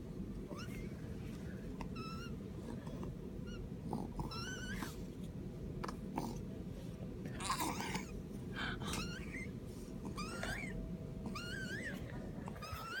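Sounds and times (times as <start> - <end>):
pet wheezing: 7.4 - 13.0.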